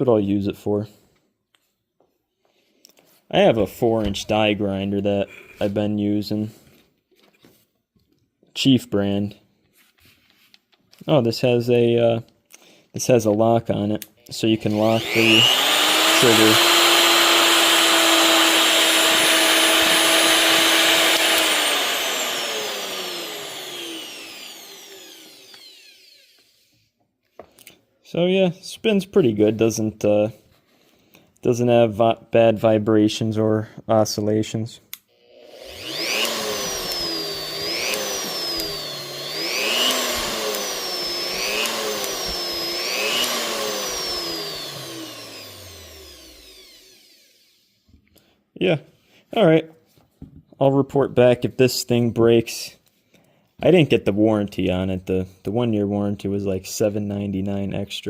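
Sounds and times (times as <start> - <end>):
cut-off tool whining: 14.6 - 26.9, 34.9 - 47.8.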